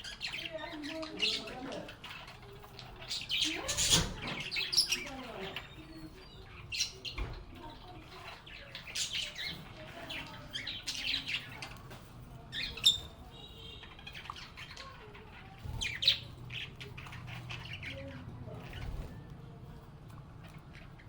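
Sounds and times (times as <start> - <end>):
lovebirds squawking and chirping: 0.0 - 21.0.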